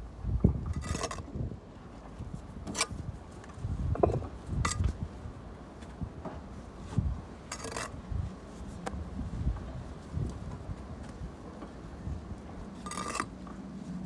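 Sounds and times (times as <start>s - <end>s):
wind rumble on microphone: 0.0s - 14.0s
trowel scraping mortar and brick: 0.6s - 1.3s, 7.5s - 8.0s, 12.8s - 13.6s.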